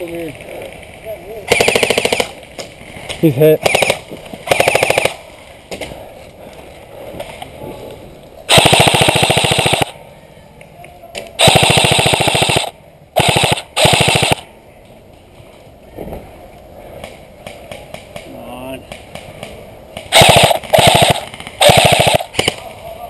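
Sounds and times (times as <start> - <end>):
airsoft rifle firing bursts: 1.5 - 2.4, 3.6 - 5.2, 8.5 - 10.0, 11.4 - 14.4, 20.0 - 22.6.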